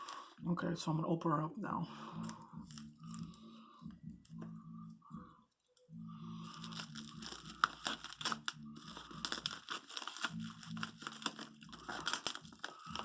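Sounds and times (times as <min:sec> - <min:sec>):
packaging being torn and crinkled: 0:06.4 - 0:13.0.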